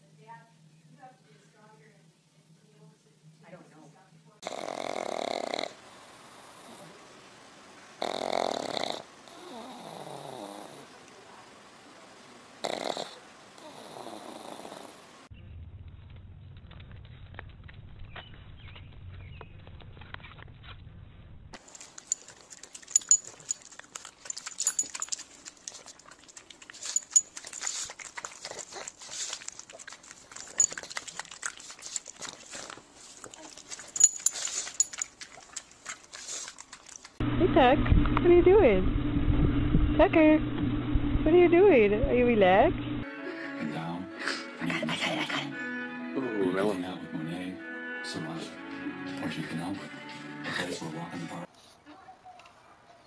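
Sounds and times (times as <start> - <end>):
dog snoring: 4.4 - 7.0, 8.0 - 10.9, 12.6 - 15.0
dog making small noises: 21.6 - 37.2.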